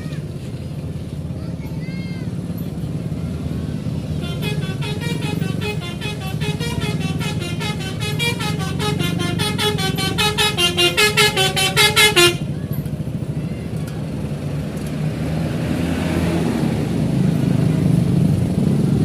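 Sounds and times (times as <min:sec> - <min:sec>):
low engine rumble: 0:00.0 - 0:15.7
bus musical air horn tooting: 0:04.0 - 0:12.7.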